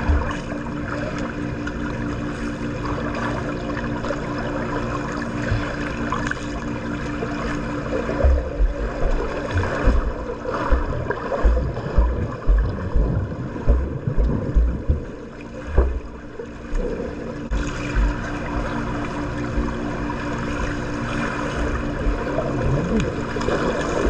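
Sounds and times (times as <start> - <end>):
low thumps: 0.0 - 0.5, 8.1 - 16.9, 17.5 - 18.8
pool water sloshing and splashing: 0.0 - 24.0
steady low hum: 0.0 - 24.0.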